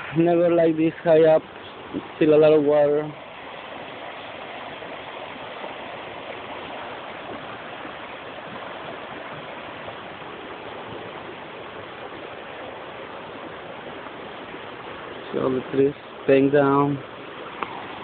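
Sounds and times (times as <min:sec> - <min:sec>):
river rushing: 0:00.0 - 0:18.0.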